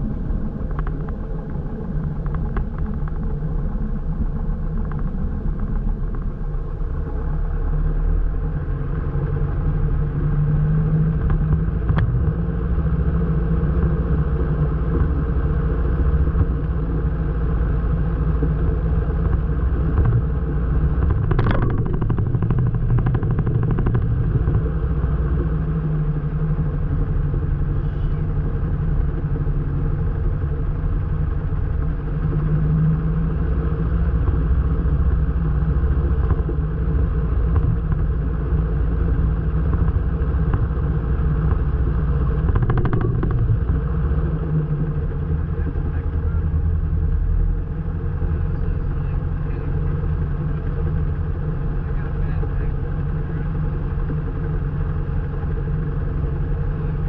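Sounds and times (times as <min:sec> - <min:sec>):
airplane piston engine running: 0:13.6 - 0:57.0.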